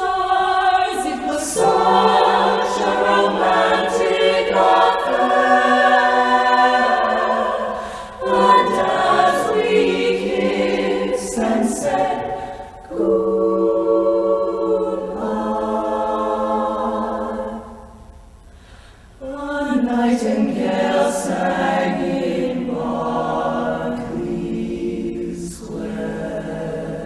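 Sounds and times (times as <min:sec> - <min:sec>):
a cappella group singing: 0:00.0 - 0:27.0.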